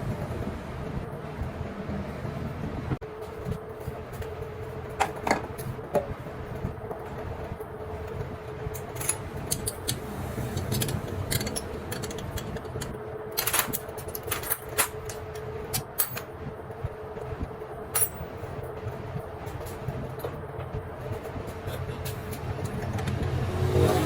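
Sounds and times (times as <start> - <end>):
steady hum and low rumble: 0.0 - 24.0
metal tools clinking: 8.8 - 12.7, 13.4 - 16.3, 18.0 - 18.3.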